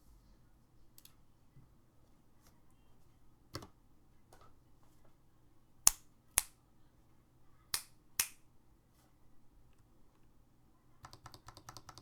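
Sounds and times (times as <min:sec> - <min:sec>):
sharp keyboard key clacks: 0:11.0 - 0:12.0.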